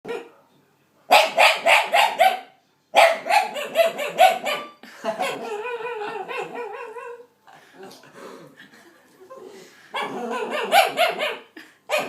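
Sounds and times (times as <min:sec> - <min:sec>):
dog barking: 0:00.0 - 0:00.4, 0:01.1 - 0:07.2, 0:09.9 - 0:12.0.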